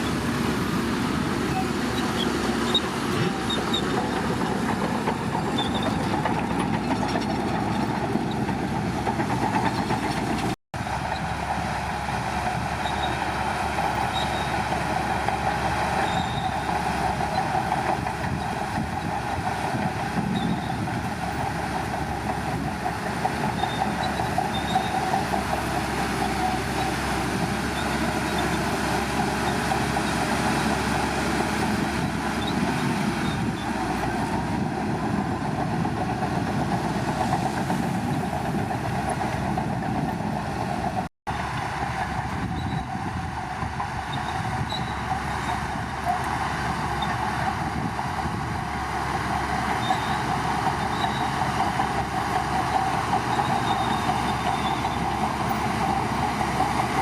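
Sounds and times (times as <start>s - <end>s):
bulldozer running: 0.0s - 57.0s
metallic track clatter: 2.7s - 11.3s.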